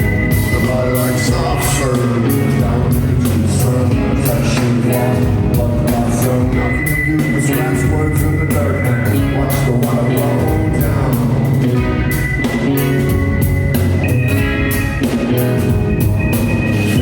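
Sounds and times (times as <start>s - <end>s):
bass and guitar: 0.0s - 17.0s
drum kit beat: 0.0s - 17.0s.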